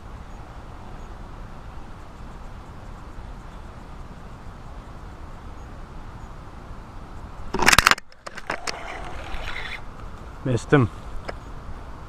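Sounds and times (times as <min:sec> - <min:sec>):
distant traffic hum: 0:00.0 - 0:12.0
rod and reel clicking and scraping: 0:07.6 - 0:09.8.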